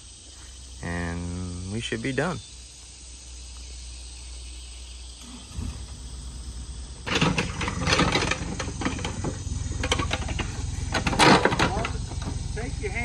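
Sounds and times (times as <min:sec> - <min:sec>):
earthmoving machine engine: 0:05.1 - 0:13.0
rattling and clanking: 0:05.2 - 0:13.0.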